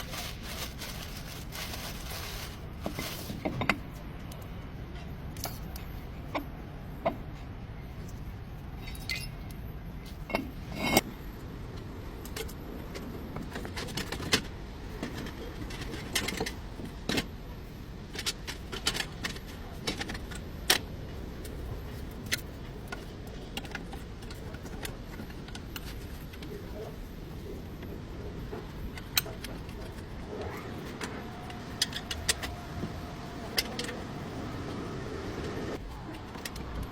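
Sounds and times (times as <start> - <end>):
steady low hum: 0.0 - 36.9
metal tools and parts clanking: 8.8 - 9.6, 10.2 - 11.1.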